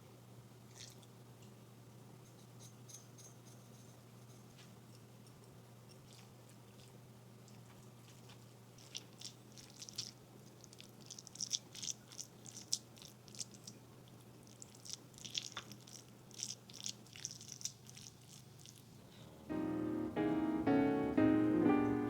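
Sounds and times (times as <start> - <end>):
food crinkling while handled: 2.3 - 19.0
low steady hum: 18.8 - 22.0.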